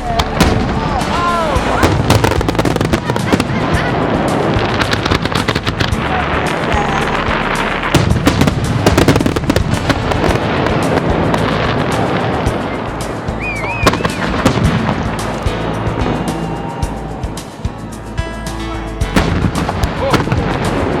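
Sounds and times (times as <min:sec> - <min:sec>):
fireworks bangs: 0:00.0 - 0:17.8, 0:19.1 - 0:21.0
fireworks crackling: 0:00.0 - 0:21.0
wavering firework whistle: 0:12.4 - 0:14.6, 0:15.8 - 0:17.8.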